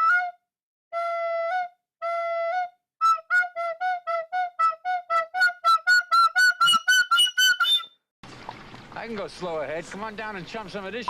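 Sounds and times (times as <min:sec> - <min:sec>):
flute-like wind instrument: 0:00.0 - 0:08.0.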